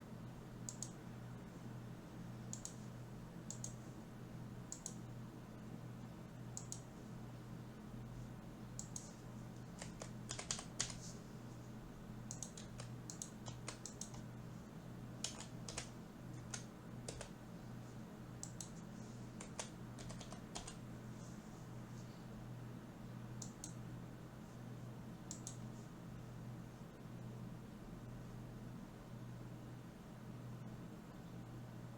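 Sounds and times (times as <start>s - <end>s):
faint low hum: 0.0s - 31.9s
keyboard keys clicking: 8.8s - 11.0s, 12.3s - 14.2s, 15.2s - 17.4s, 19.4s - 20.8s.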